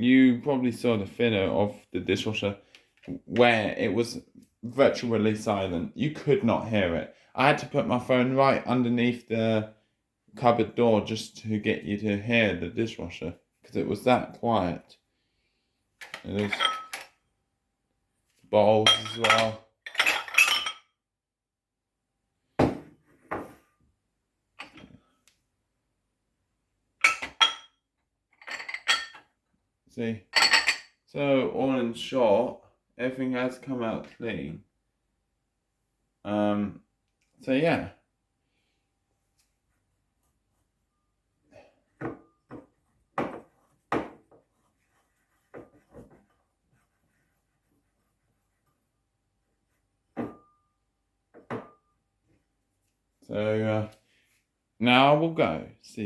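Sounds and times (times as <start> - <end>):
dishwasher racks and crockery clattering: 16.1 - 17.1.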